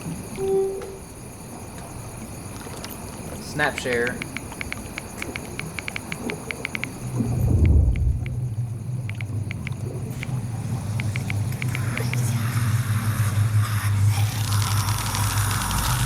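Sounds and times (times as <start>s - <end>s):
faint clicks: 3.7s - 7.0s, 9.0s - 12.4s
low rumbling drone: 7.1s - 16.0s.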